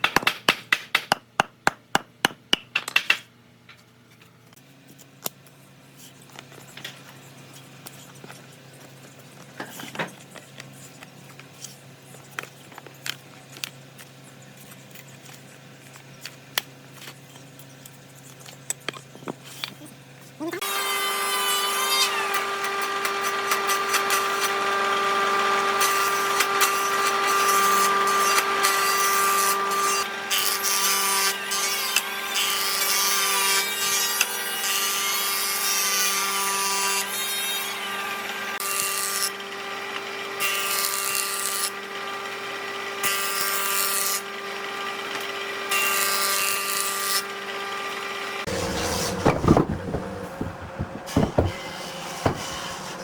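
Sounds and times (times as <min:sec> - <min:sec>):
power tool whine: 0:47.2 - 0:53.0
knocks: 0:48.6 - 0:52.9.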